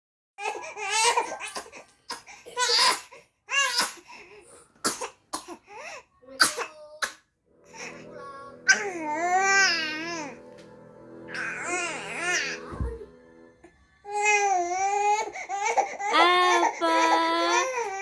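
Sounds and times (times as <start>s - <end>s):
baby coughing: 0.5s - 4.1s, 4.8s - 7.2s, 16.1s - 18.0s
baby crying: 11.4s - 12.7s, 14.1s - 18.0s.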